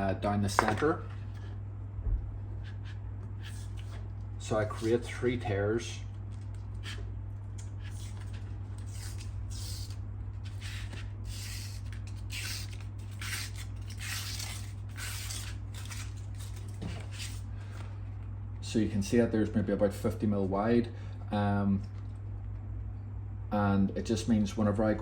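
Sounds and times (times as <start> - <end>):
paper tearing and peeling: 7.8 - 17.5.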